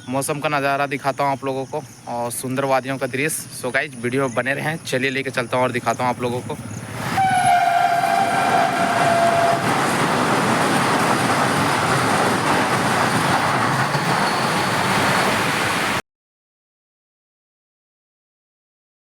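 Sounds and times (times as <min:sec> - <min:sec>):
moving train rushing: 0:06.6 - 0:16.0
train horn blowing: 0:07.2 - 0:10.2.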